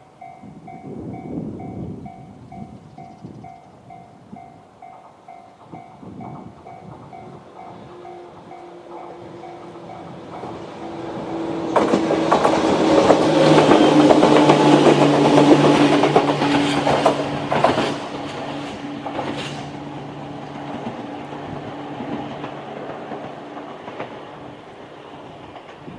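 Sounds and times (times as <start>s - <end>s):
level crossing warning bell: 0.0s - 11.2s
train wheels clattering over joints: 4.8s - 25.9s.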